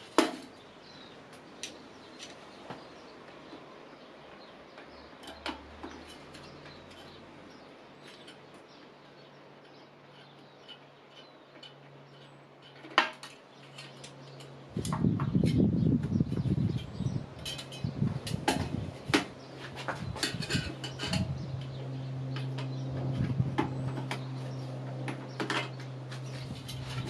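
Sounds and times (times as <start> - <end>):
rustling clatter: 9.7 - 27.0.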